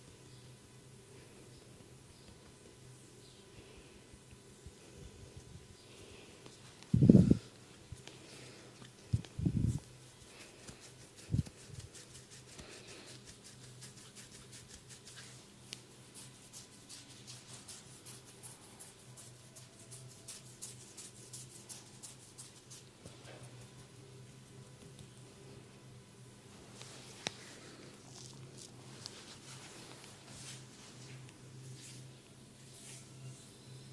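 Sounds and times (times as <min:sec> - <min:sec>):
hands ticking and rubbing: 0:08.8 - 0:25.1.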